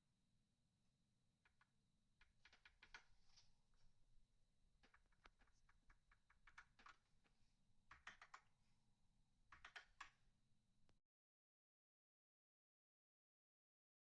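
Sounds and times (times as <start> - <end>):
typing on a mechanical keyboard: 4.8 - 7.0, 7.9 - 8.5, 9.5 - 10.2.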